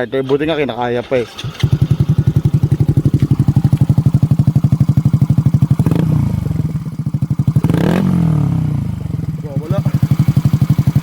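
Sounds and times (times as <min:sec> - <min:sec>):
scooter engine idling: 0:01.0 - 0:11.0.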